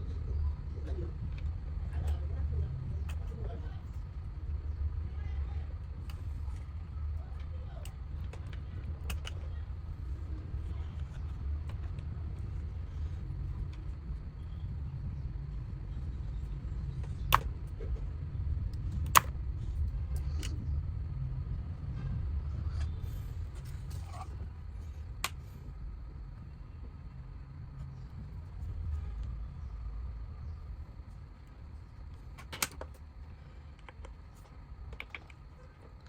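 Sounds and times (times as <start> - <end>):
low rumble: 0.0 - 32.4
clicks and taps of small parts: 7.4 - 9.6, 17.0 - 17.6, 18.7 - 19.4, 32.4 - 33.1, 33.7 - 35.5.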